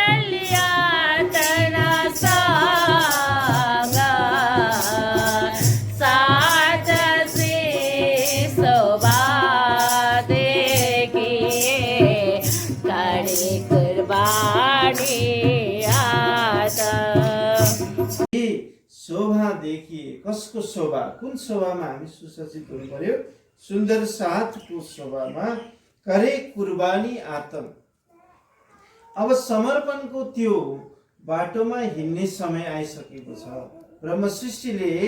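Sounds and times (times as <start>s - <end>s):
high percussion beat: 0.0s - 18.3s
woman singing devotional song: 0.0s - 18.3s.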